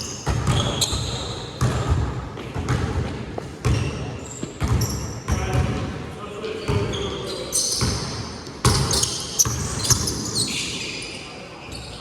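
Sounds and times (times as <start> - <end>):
sneaker squeaks: 0.0 - 2.8, 3.6 - 5.6, 6.6 - 12.0
basketball bouncing: 0.2 - 4.0, 4.6 - 5.8, 7.8 - 10.2.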